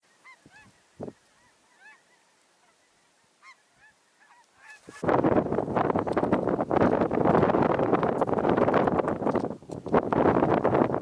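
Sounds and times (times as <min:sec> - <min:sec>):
geese honking: 0:00.2 - 0:05.0.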